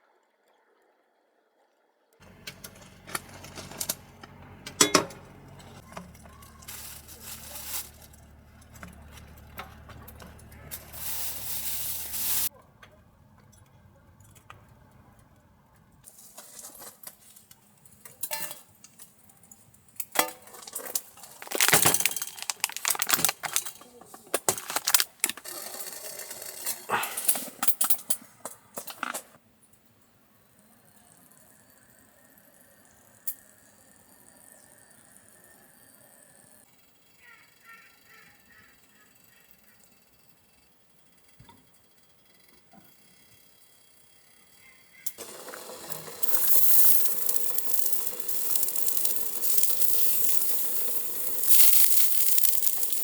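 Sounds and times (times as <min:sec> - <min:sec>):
metallic clinks and clattering: 0:04.8 - 0:12.5, 0:46.2 - 0:53.0.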